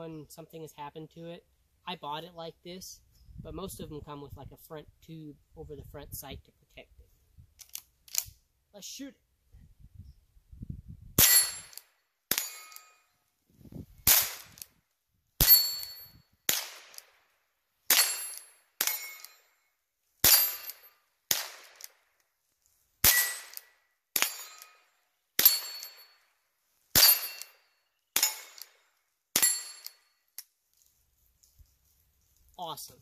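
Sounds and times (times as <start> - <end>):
rifle shots: 16.5 - 17.2, 21.3 - 21.9.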